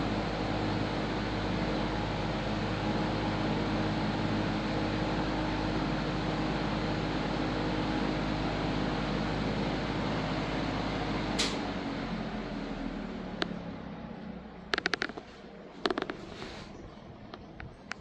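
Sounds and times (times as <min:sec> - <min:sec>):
box fan running: 0:00.0 - 0:18.0
fan blades coasting down: 0:00.0 - 0:18.0
fan switch click: 0:11.4 - 0:11.7.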